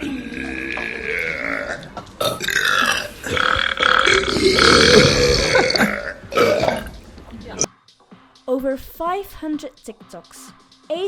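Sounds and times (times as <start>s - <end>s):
loud human burps: 0.0s - 7.7s.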